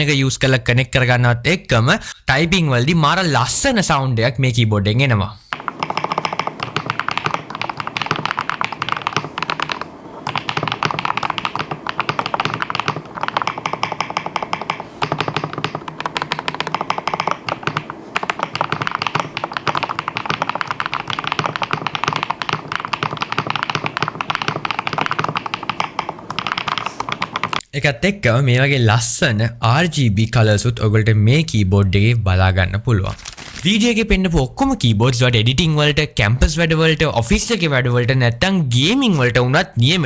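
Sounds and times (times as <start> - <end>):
mechanical keyboard typing: 5.5 - 27.6.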